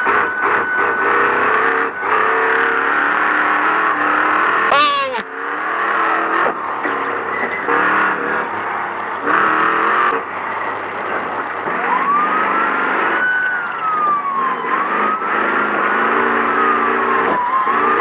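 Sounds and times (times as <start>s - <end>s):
siren wailing: 4.7s - 5.3s, 11.7s - 18.0s.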